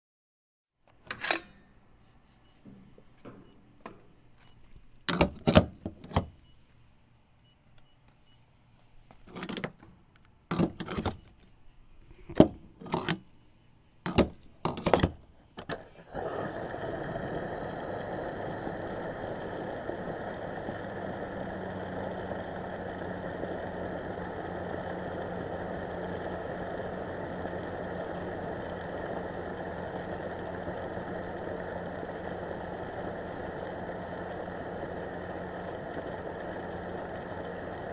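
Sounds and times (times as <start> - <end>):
fuel rushing into tank: 15.7 - 37.9
low steady hum: 15.8 - 37.9.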